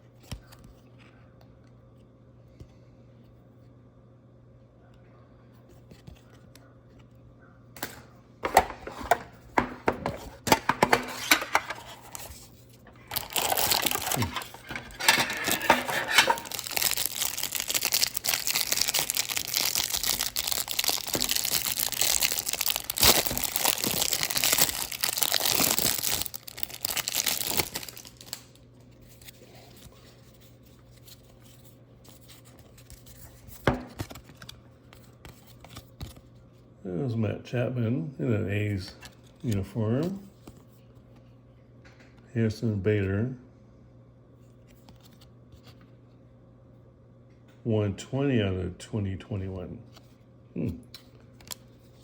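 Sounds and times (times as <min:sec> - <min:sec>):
card pack wrapper crinkling: 0:10.6 - 0:36.3.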